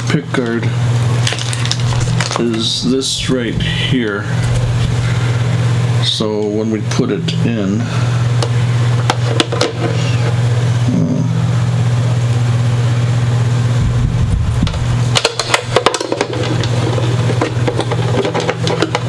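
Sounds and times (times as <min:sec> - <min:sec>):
steady low hum: 0:00.0 - 0:19.0
short low rumble: 0:01.4 - 0:06.0, 0:13.6 - 0:15.1
clicks and taps handling guitar: 0:14.6 - 0:19.0.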